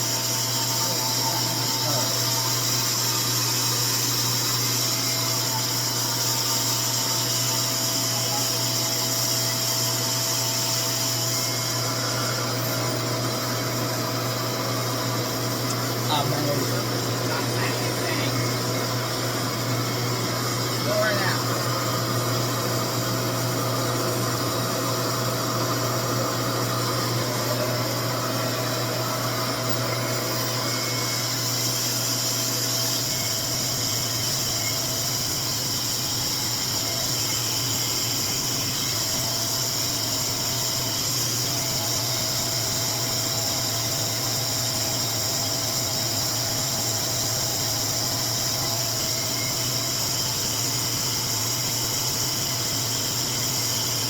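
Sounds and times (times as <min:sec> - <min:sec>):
hair dryer whirring: 0:00.0 - 0:54.0.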